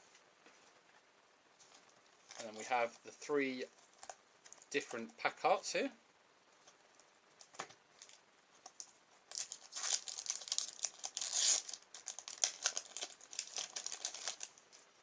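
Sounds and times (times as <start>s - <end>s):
foil wrapper crinkling and tearing: 9.3s - 14.6s.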